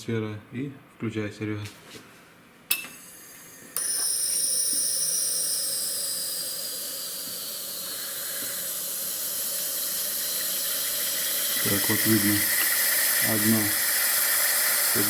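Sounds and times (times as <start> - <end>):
fuel injectors spraying hiss: 6.2 - 15.0.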